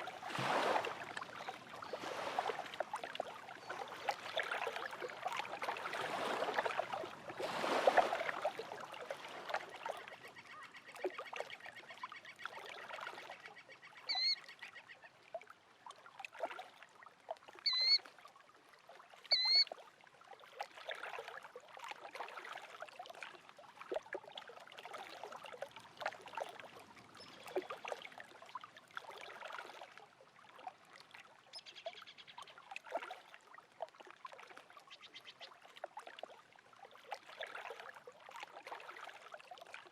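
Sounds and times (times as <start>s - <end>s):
small waves lapping at shore: 0.0s - 39.9s
bird short rising calls: 17.7s - 18.0s, 19.3s - 19.6s.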